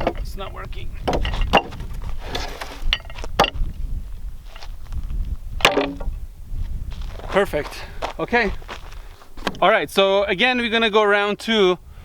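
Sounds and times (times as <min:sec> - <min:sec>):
axe knocking and scraping: 0:01.0 - 0:03.7, 0:05.6 - 0:06.2, 0:09.4 - 0:09.6.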